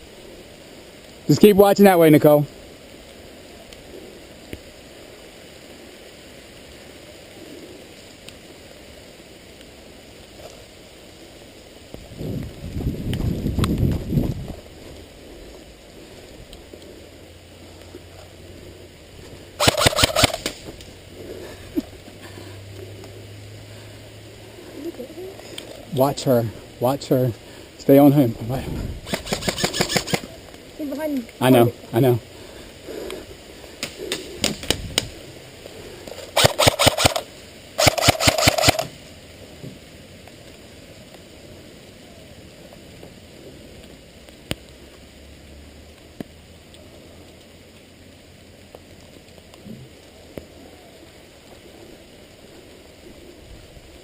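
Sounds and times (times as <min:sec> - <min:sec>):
airsoft gun shots: 0:19.6 - 0:20.6, 0:36.4 - 0:37.2, 0:37.8 - 0:38.9.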